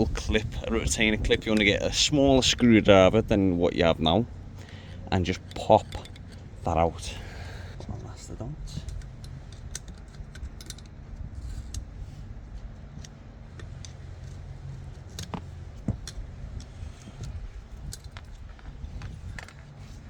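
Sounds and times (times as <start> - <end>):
steady low hum: 0.0 - 20.0
screwdriver clicking and scraping metal: 5.3 - 7.1, 8.7 - 11.9.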